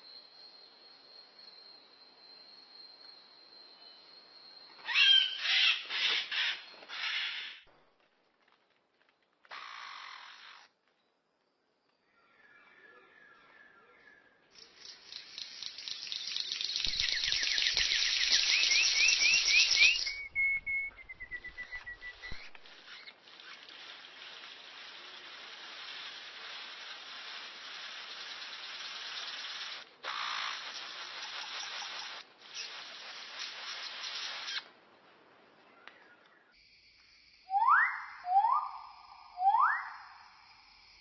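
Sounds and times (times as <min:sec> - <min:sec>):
steady hiss: 0:14.6 - 0:37.6
bird whistles: 0:16.8 - 0:23.1, 0:37.5 - 0:40.2.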